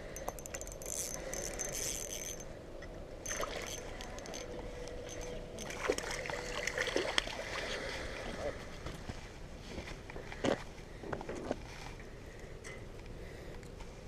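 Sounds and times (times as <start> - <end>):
fishing reel clicking: 0.0 - 2.5, 3.2 - 5.8
fishing reel whirring: 0.0 - 2.6, 3.2 - 6.0.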